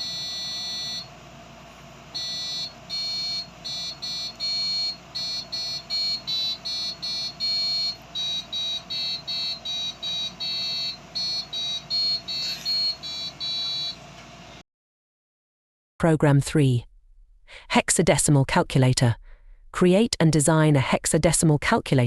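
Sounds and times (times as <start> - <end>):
buzzer playing beeping melody: 0.0 - 1.1, 2.1 - 14.0.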